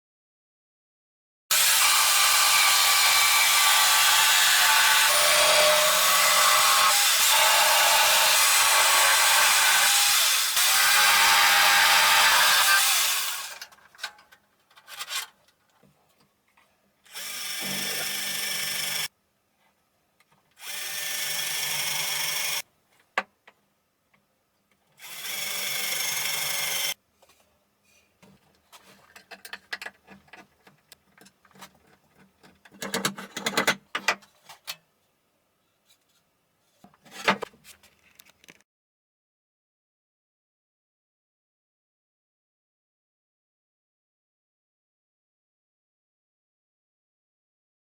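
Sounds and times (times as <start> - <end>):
electric power saw running: 17.1 - 19.1
wood and tool clattering: 28.2 - 34.8, 36.8 - 38.6.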